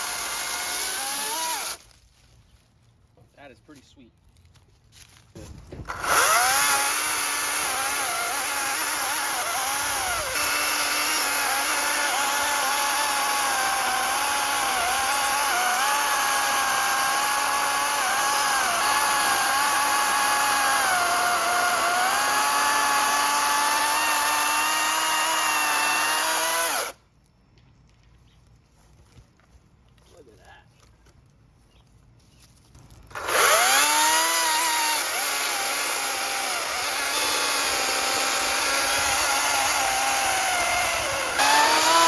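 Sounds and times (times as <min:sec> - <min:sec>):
electric chainsaw cutting wood: 0:00.0 - 0:01.9, 0:05.7 - 0:27.0, 0:33.1 - 0:42.0.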